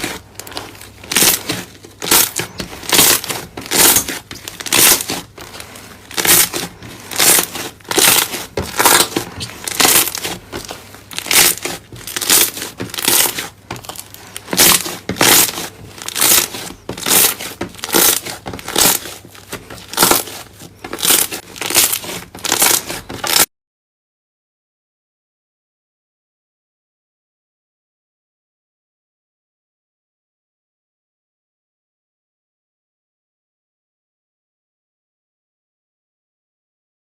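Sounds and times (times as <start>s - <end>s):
slime crunching and crackling: 0.0s - 23.5s.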